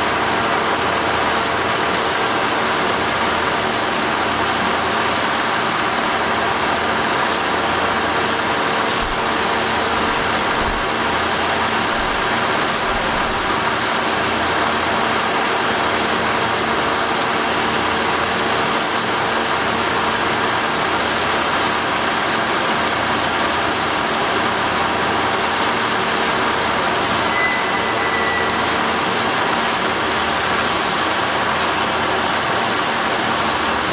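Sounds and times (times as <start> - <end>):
machine engine drone: 0.0 - 33.9
brief high tone: 27.1 - 29.4.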